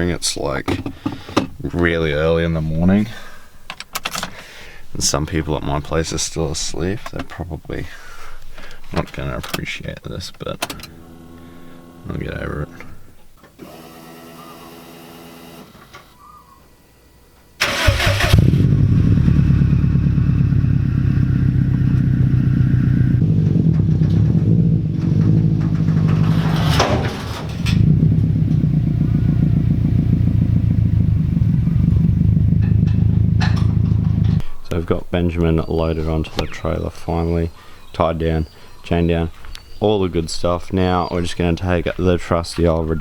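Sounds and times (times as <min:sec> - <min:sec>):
car engine starting and idling: 0:17.6 - 0:34.5.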